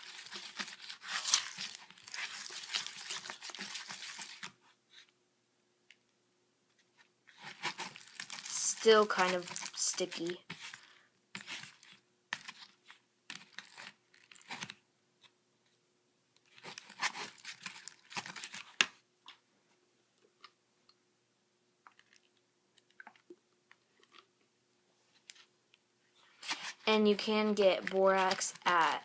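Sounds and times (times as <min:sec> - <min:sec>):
slime squelching: 0:00.0 - 0:05.1, 0:07.3 - 0:14.6, 0:26.2 - 0:29.0.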